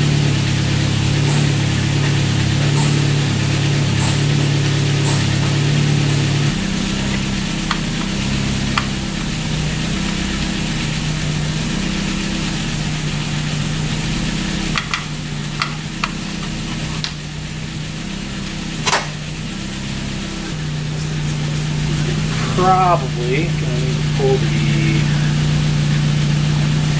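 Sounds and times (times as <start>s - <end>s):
steady low hum: 0.0s - 26.9s
hand tools clicking on metal: 14.8s - 17.2s.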